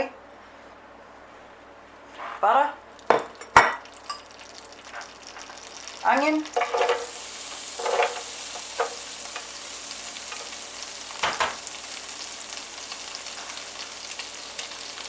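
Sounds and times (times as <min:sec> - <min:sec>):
onion sizzling in a frying pan: 0:02.1 - 0:15.0
utensil clattering against pan: 0:06.5 - 0:07.2, 0:07.8 - 0:09.5.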